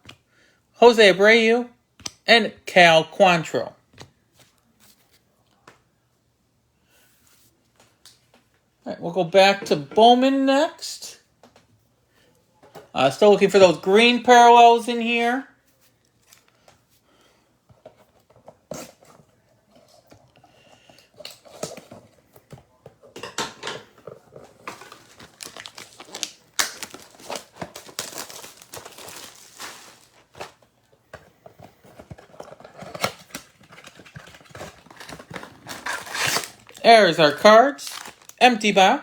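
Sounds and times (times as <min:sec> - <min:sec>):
foil wrappers crinkling and tearing: 0:24.0 - 0:30.7, 0:31.9 - 0:38.4.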